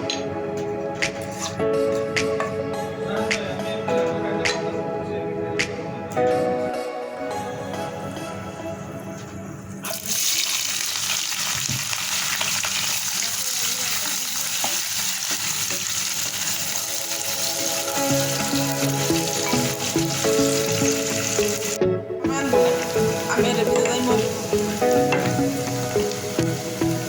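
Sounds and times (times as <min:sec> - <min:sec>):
faint background music: 0:00.0 - 0:10.9, 0:13.2 - 0:27.0
food sizzling in hot oil: 0:09.8 - 0:21.8, 0:22.4 - 0:27.0.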